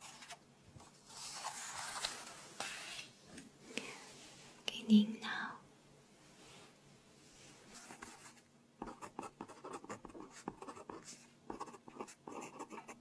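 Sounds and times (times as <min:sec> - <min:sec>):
pen scratching on paper: 0:07.8 - 0:13.0.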